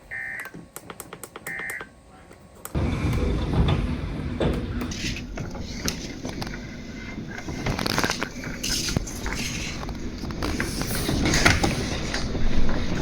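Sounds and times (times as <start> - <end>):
crackles and clicks: 2.6 - 13.0.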